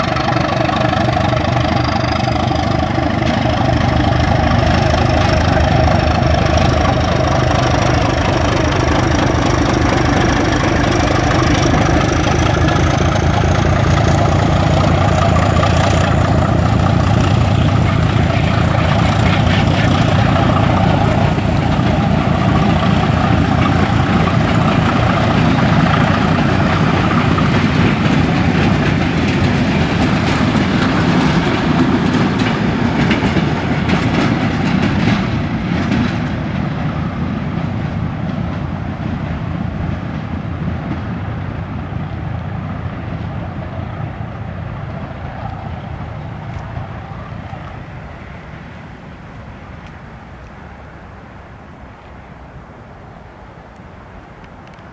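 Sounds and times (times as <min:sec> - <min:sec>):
train wheels clacking over rail joints: 0:00.0 - 0:50.7.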